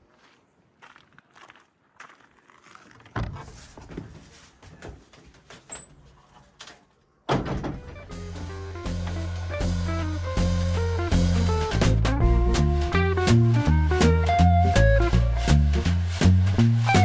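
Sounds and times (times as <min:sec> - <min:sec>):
footsteps: 0:00.0 - 0:06.2
music with drums and guitar: 0:07.9 - 0:17.0.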